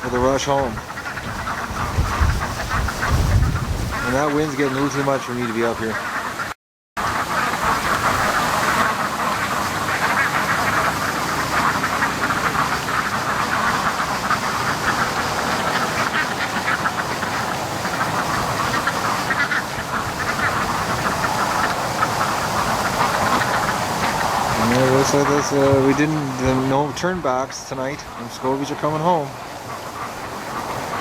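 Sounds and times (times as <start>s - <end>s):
wind rumble on microphone: 0.0s - 4.6s, 19.7s - 27.2s
ducks quacking: 0.0s - 31.0s.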